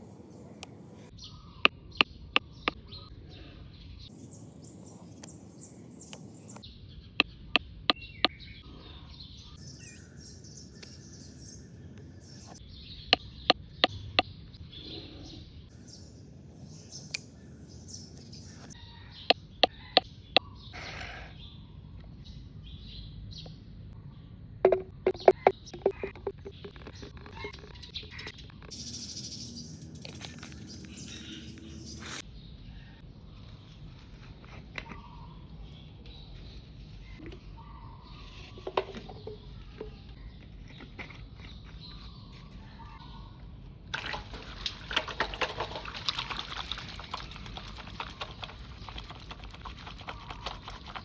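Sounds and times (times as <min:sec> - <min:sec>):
birds chirping: 0:00.0 - 0:51.0
sharp taps: 0:24.7 - 0:26.8.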